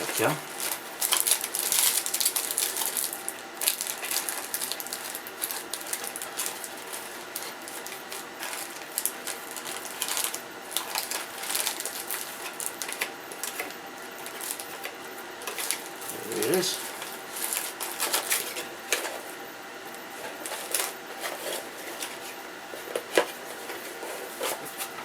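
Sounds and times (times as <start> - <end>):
hands rummaging through small parts: 0.0 - 14.8, 15.4 - 19.3.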